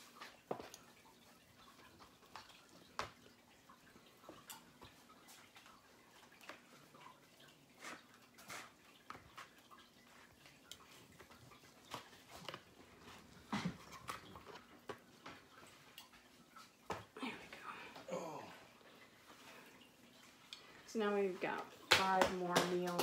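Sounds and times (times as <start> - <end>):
utensils tapping food containers: 21.8 - 23.0.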